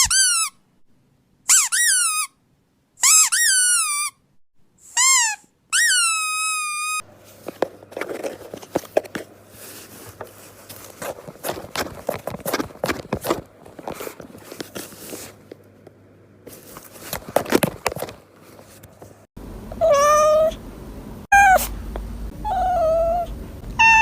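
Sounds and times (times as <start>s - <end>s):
squeaky dog toy squeaking: 0.0s - 0.6s, 1.5s - 2.4s, 3.0s - 4.2s, 4.8s - 7.0s, 23.8s - 24.0s
soft rustling: 7.2s - 15.6s, 16.5s - 19.3s.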